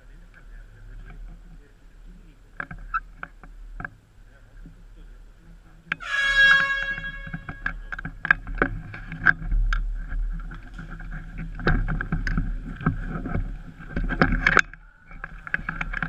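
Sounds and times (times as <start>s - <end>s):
sharp clicks and knocks: 2.6s - 4.0s, 7.2s - 16.0s
horn-like blast: 6.0s - 7.8s.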